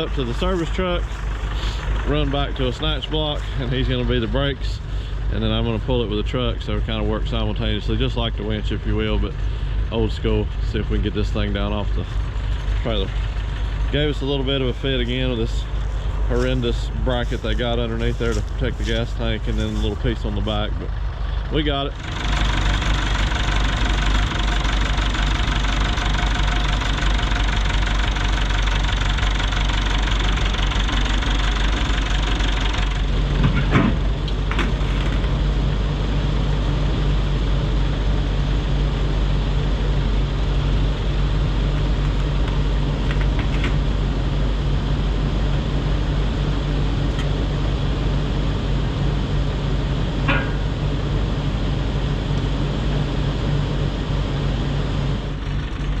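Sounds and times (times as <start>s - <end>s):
steady low hum: 0.0s - 56.0s
vehicle engine running: 0.0s - 56.0s.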